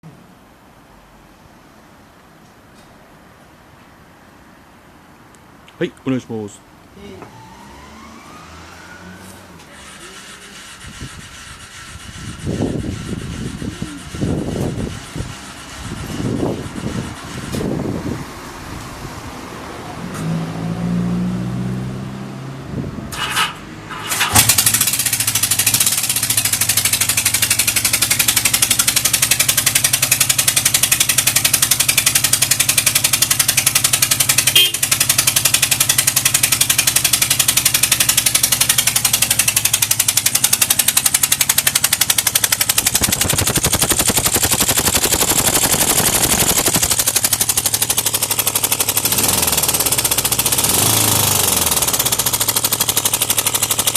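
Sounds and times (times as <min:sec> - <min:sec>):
electric starter cranking: 0:09.6 - 0:18.0, 0:23.1 - 0:53.9
motorcycle engine idling: 0:24.4 - 0:53.9.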